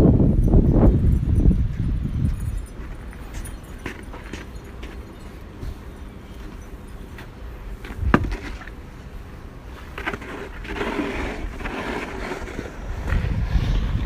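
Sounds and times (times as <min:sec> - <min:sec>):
wind rumbling on microphone: 0:00.0 - 0:06.1, 0:07.8 - 0:08.8, 0:10.2 - 0:14.0
rough scraping noise: 0:09.7 - 0:14.0.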